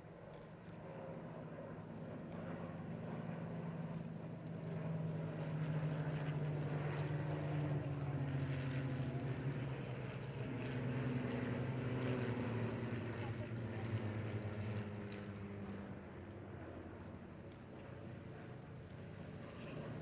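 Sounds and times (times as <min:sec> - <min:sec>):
propeller aircraft engines droning: 0:00.0 - 0:20.0.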